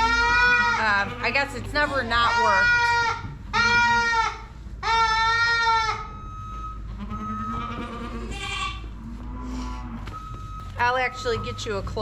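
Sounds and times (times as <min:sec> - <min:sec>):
goat bleating: 0:00.0 - 0:06.1, 0:06.9 - 0:09.2.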